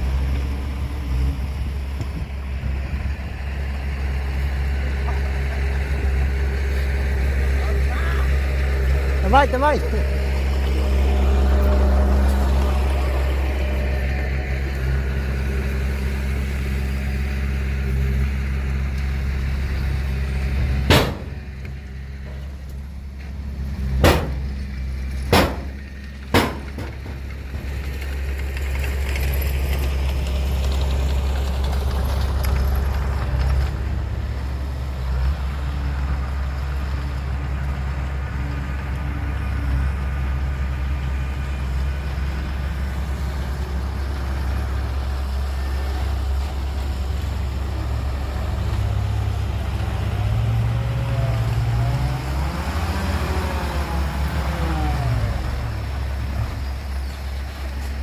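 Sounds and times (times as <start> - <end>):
heavy engine running at low revs: 0.0 - 58.0
sharp knocks: 20.9 - 21.4, 24.0 - 24.6, 25.3 - 27.3.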